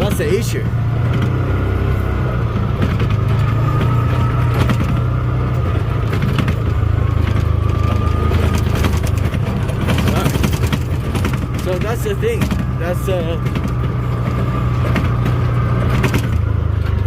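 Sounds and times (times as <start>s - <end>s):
rattles and knocks over rough ground: 0.0s - 17.0s
vehicle engine droning: 0.0s - 17.0s.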